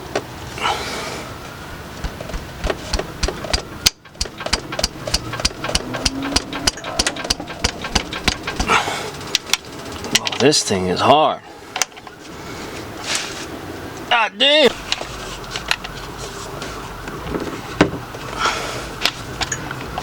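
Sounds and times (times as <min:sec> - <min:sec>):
ratchet wrench clicking: 0:02.9 - 0:08.7.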